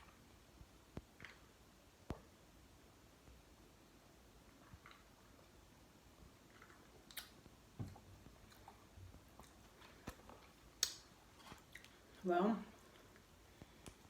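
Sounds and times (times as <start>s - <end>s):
person chewing food: 4.4s - 5.7s, 6.3s - 12.2s, 12.8s - 14.0s
mouth clicks and smacks: 6.5s - 12.0s.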